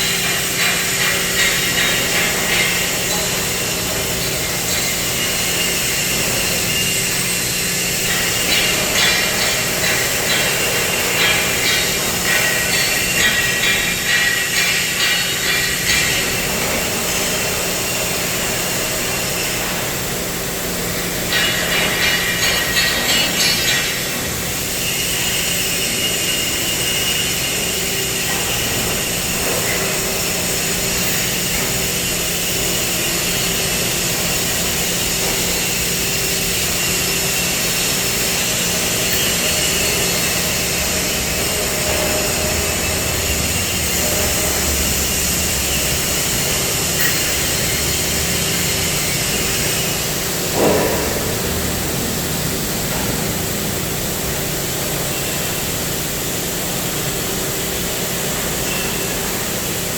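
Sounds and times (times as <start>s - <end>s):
machine rattling: 0.0s - 26.0s
cutting machine hiss: 0.0s - 59.9s.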